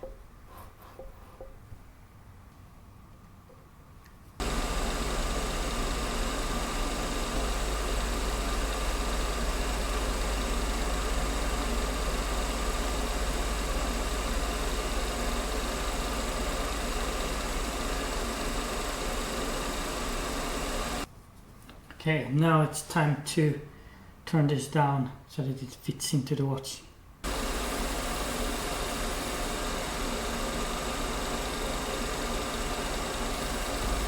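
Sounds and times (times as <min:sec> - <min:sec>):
lathe motor humming and whining: 0:04.4 - 0:21.1, 0:27.2 - 0:34.0.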